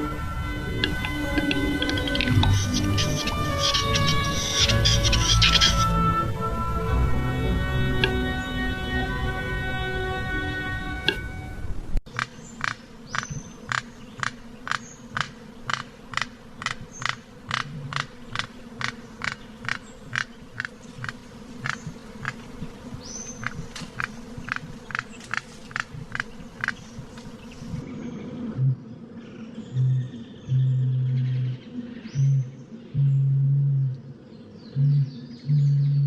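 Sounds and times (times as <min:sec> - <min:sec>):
bird clicking call: 0:00.8 - 0:05.9, 0:12.1 - 0:22.4, 0:23.4 - 0:26.9.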